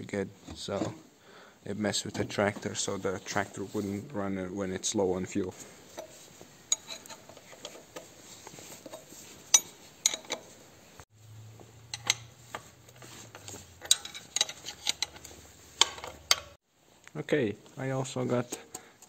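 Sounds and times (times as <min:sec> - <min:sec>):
metal tools clicking and clinking: 0:05.9 - 0:08.1, 0:08.8 - 0:10.6, 0:11.8 - 0:16.6.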